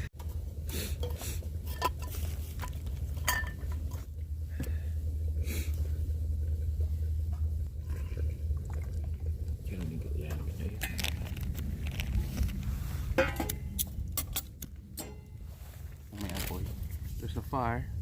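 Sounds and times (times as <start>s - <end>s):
low rumble: 0.0s - 18.0s
metal cookware clinking: 3.2s - 3.9s, 15.0s - 15.4s
short metallic rings: 15.0s - 15.4s.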